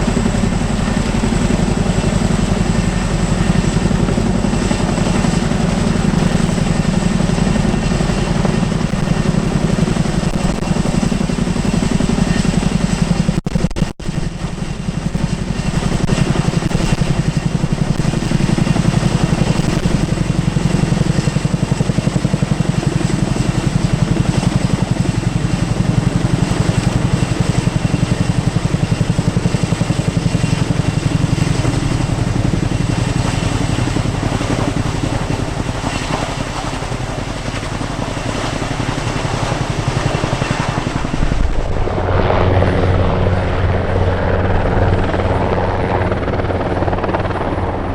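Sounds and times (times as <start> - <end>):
helicopter rotor beating: 0.0 - 47.9.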